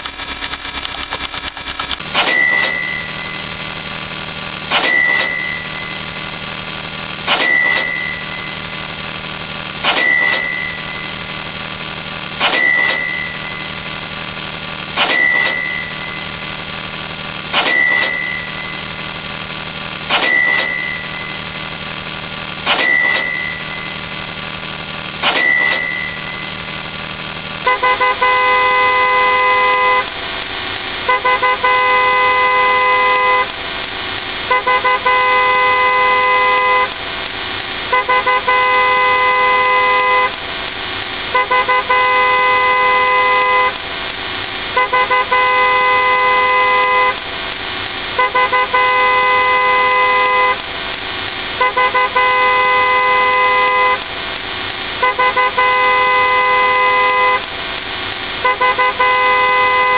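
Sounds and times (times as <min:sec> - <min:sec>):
click and short beep: 0:00.0 - 0:03.7, 0:04.7 - 0:06.2, 0:07.3 - 0:08.7, 0:09.8 - 0:11.0, 0:12.4 - 0:13.8, 0:15.0 - 0:16.4, 0:17.5 - 0:18.9, 0:20.1 - 0:21.5, 0:22.7 - 0:24.0, 0:25.2 - 0:26.6, 0:27.7 - 0:37.0
high whine and hum: 0:00.0 - 0:59.9
car horn honking: 0:27.7 - 0:30.1, 0:31.1 - 0:33.5, 0:34.5 - 0:36.9, 0:37.9 - 0:40.4, 0:41.3 - 0:43.8, 0:44.8 - 0:47.2, 0:48.2 - 0:50.6, 0:51.6 - 0:54.0, 0:55.0 - 0:57.5, 0:58.4 - 0:59.9.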